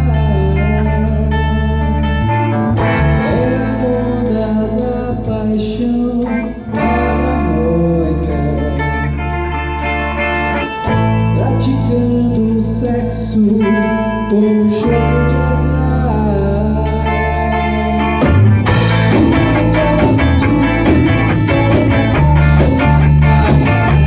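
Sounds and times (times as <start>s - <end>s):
bass guitar: 0.0s - 24.0s
electric guitar bending notes: 0.0s - 24.0s
drum kit beat: 17.8s - 24.0s.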